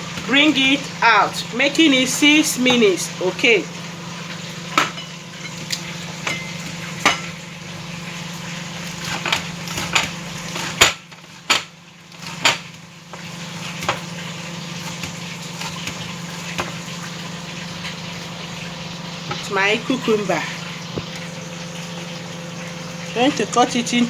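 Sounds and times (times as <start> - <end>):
kitchen utensils clattering: 0.0 - 3.7, 4.4 - 7.9, 8.8 - 14.1
fish sizzling in hot oil: 0.0 - 24.0.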